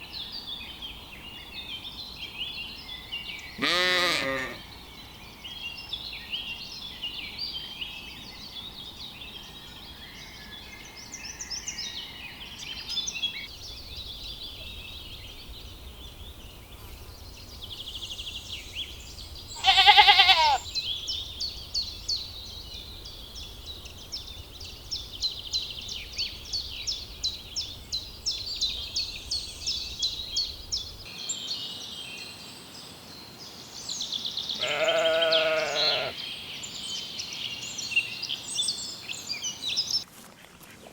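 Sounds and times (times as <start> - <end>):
birds chirping: 0.3 - 32.8, 33.4 - 40.1
lamb bleating: 3.6 - 4.6, 19.6 - 20.6, 34.6 - 36.2.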